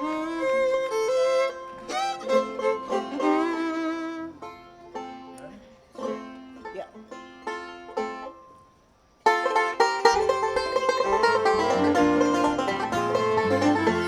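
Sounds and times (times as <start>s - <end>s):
bluegrass band playing: 0.0s - 8.5s, 9.2s - 14.0s
plucked notes: 0.0s - 8.6s, 9.2s - 14.0s
banjo: 0.0s - 14.0s
low bass notes: 10.9s - 14.0s.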